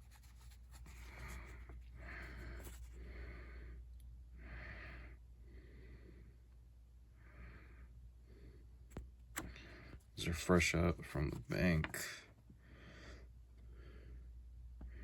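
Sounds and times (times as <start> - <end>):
person breathing: 0.8 - 6.5, 7.1 - 8.8, 9.4 - 10.1, 12.6 - 15.0.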